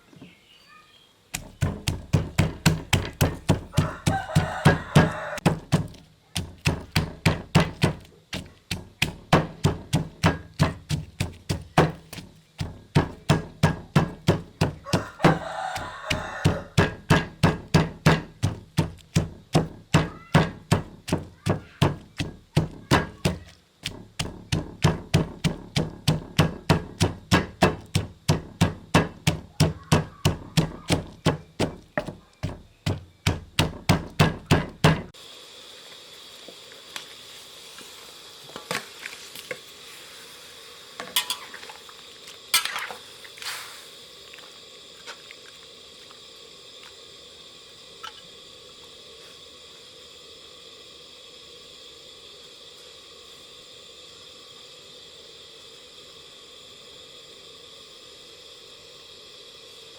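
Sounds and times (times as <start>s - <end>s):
knife chopping on cutting board: 16.1s - 35.1s
faint steady hiss: 34.5s - 59.9s
kitchen utensils clinking: 41.0s - 41.8s.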